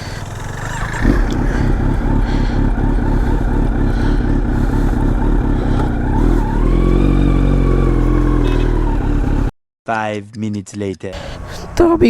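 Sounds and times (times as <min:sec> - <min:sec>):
motorcycle engine running: 0:00.0 - 0:09.5.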